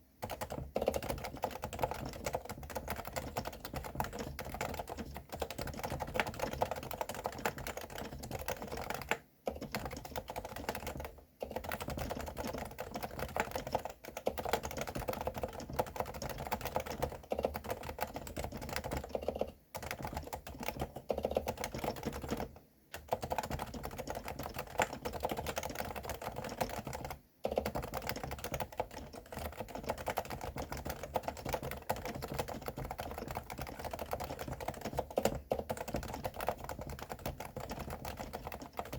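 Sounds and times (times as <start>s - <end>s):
fast typing on muted keyboard: 0.0s - 38.9s.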